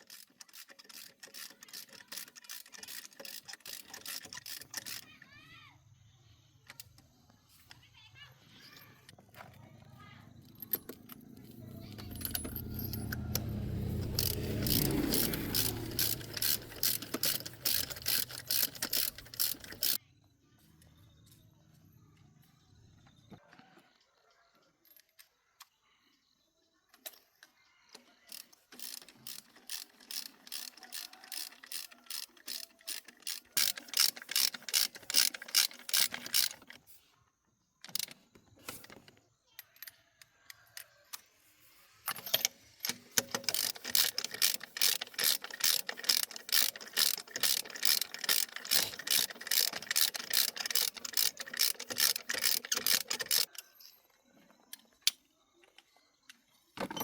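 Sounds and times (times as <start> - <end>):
ratchet wrench clicking: 0.0 - 5.1, 11.8 - 20.0, 28.2 - 36.8, 37.8 - 38.2, 42.1 - 53.6.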